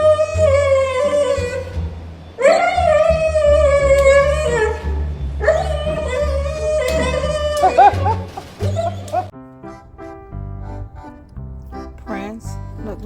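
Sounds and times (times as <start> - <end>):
dog howling: 5.4 - 8.2.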